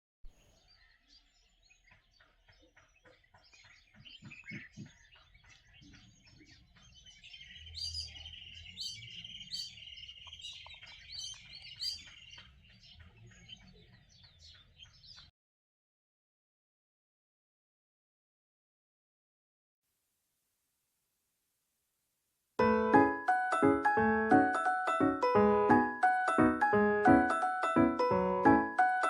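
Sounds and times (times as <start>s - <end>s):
birds chirping: 0.2s - 15.3s, 22.6s - 29.0s.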